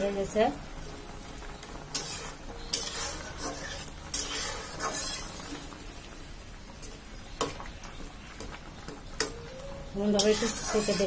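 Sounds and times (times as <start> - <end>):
hiss of simmering food: 0.0 - 11.0
utensil stirring and scraping pot: 1.9 - 5.7, 10.0 - 11.0.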